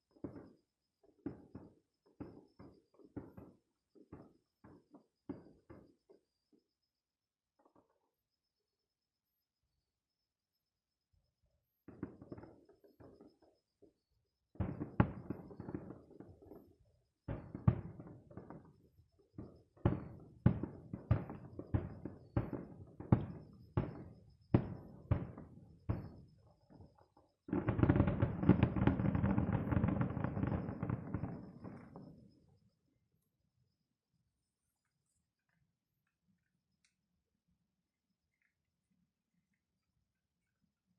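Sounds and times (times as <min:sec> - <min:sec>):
fireworks shells bursting: 0:27.0 - 0:32.5.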